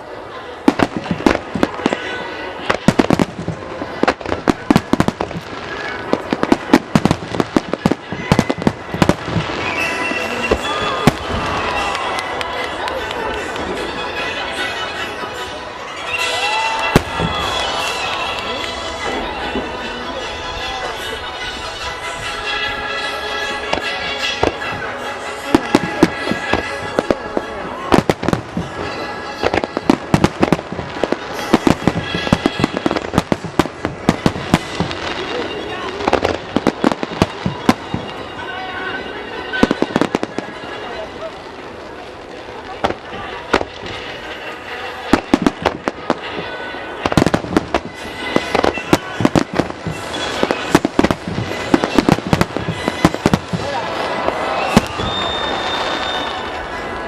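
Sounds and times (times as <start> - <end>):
show music: 0.0 - 57.0
fireworks shells bursting: 22.2 - 38.4.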